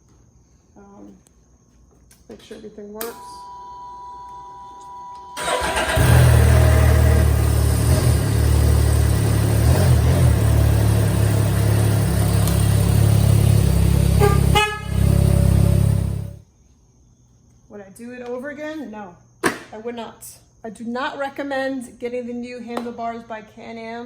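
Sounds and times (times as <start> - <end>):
three-wheeler engine running loudly: 5.4 - 16.4.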